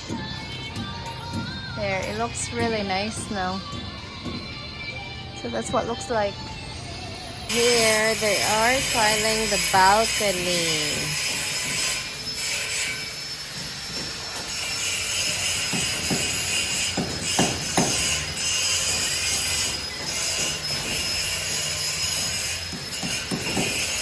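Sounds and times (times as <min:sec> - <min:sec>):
sharp knocks: 0:15.7 - 0:18.2.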